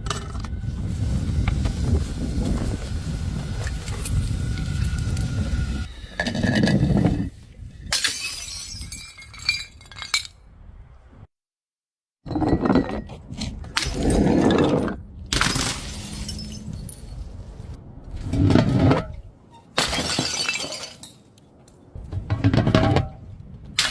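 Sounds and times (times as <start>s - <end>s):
glass bottles smashing: 7.9s - 10.3s, 13.8s - 17.3s, 19.8s - 21.3s
glass shards clinking: 15.4s - 17.3s.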